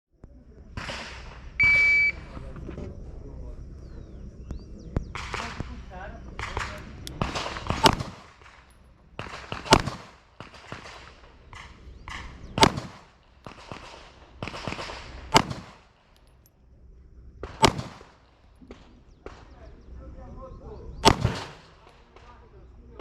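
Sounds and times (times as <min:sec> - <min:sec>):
loud pistol shots: 0:06.4 - 0:16.2, 0:17.4 - 0:19.5, 0:21.0 - 0:22.1.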